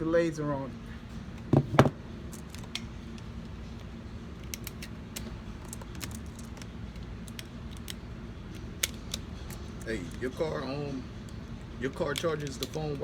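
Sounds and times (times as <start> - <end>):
dull knocks: 1.5 - 2.0.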